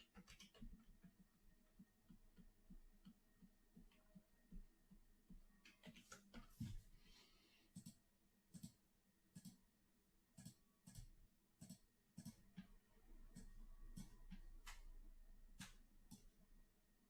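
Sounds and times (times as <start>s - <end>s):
computer mouse clicks: 7.7s - 9.6s, 10.4s - 12.7s, 13.3s - 15.0s, 15.6s - 16.4s.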